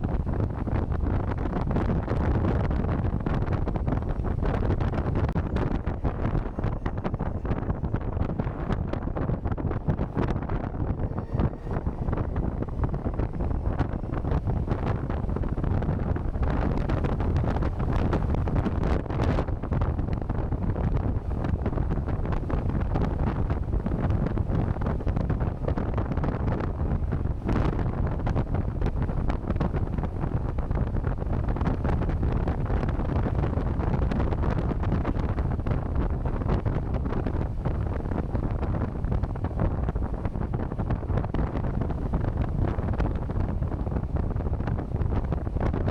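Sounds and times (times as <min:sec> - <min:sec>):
wind buffeting microphone: 0:00.0 - 0:45.9.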